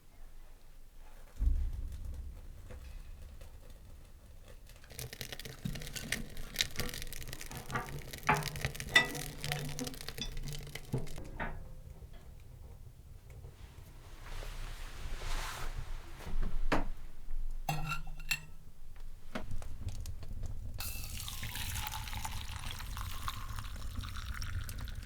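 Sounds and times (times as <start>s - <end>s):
faint hiss: 13.5s - 17.6s.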